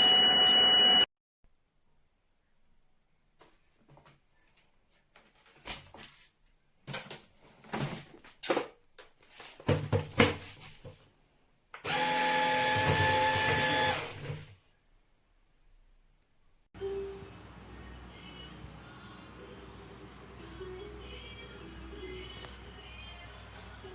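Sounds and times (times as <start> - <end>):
vacuum cleaner motor whining: 0.0 - 1.0, 11.8 - 14.5.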